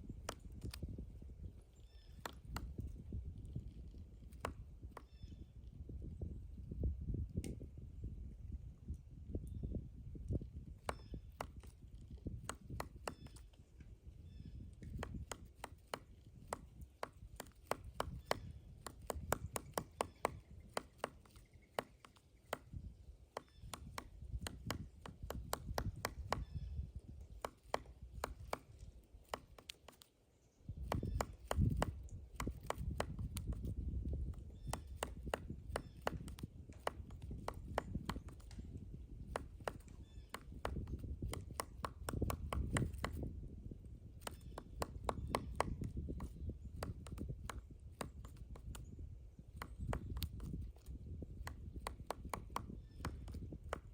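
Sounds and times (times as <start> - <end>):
woodpecker knocking on wood: 0.1 - 0.9, 1.9 - 5.4, 10.6 - 13.6, 14.3 - 30.1, 30.7 - 53.9.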